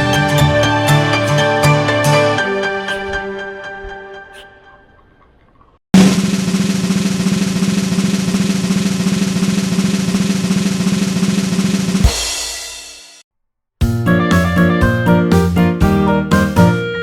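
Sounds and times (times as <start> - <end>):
snare drum roll: 6.0 - 13.2.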